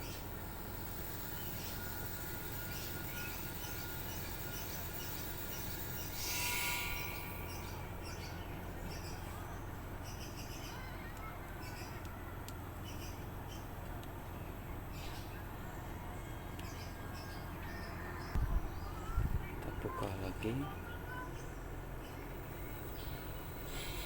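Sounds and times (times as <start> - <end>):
small bird chirping: 0.0 - 12.0, 19.9 - 24.0
steady low hum: 0.0 - 24.0.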